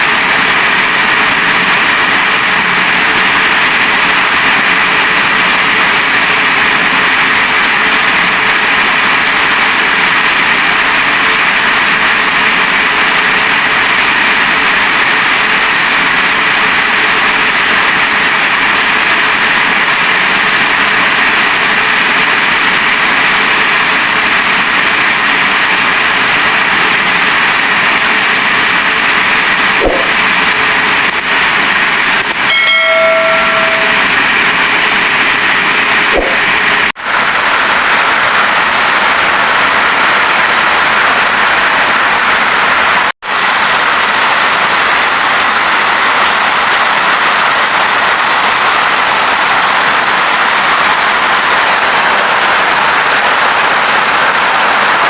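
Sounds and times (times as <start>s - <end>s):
heavy rain falling: 0.0s - 55.0s
brief pitched tone: 32.4s - 34.2s.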